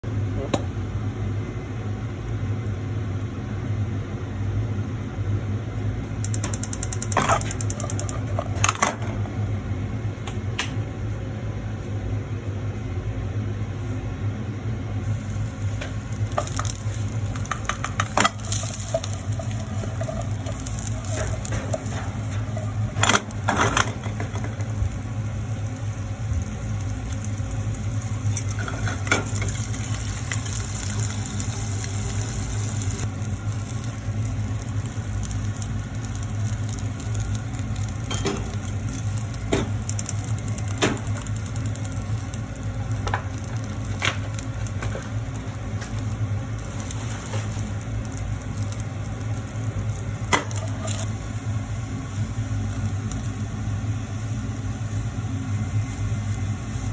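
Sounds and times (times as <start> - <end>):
constant low hum: 0.0 - 56.9
food frying: 6.1 - 9.0, 15.0 - 56.9.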